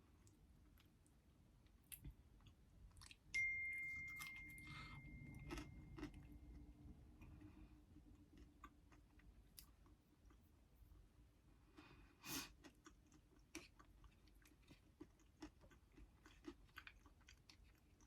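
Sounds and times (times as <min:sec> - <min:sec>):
quiet chewing: 0:00.0 - 0:06.6, 0:07.2 - 0:10.6, 0:11.6 - 0:18.0
bright ding: 0:03.4 - 0:06.5.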